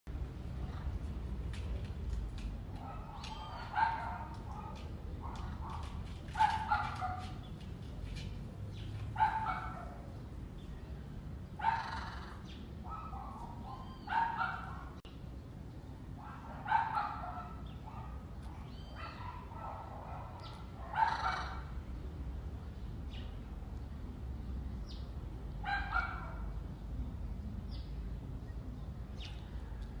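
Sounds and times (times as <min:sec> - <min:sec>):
dog barking: 0:02.8 - 0:07.4, 0:09.2 - 0:10.1, 0:11.6 - 0:12.0, 0:12.8 - 0:15.0, 0:16.2 - 0:21.6, 0:25.6 - 0:26.5.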